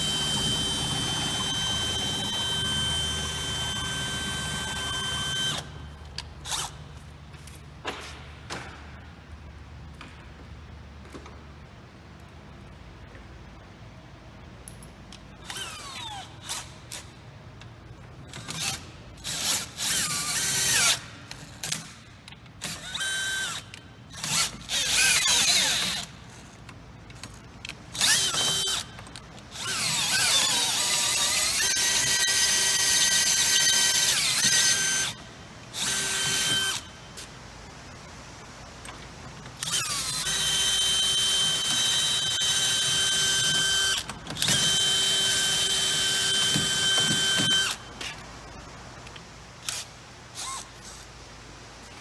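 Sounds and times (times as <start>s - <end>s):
power drill boring into metal lock: 39.6s - 47.8s.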